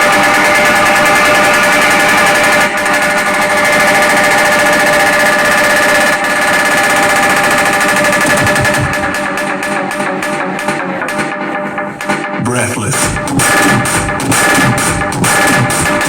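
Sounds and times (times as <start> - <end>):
rattling drum roll: 6.9 - 9.7
held synth tones: 8.2 - 9.5
electronic beat: 8.2 - 11.4, 12.0 - 16.0.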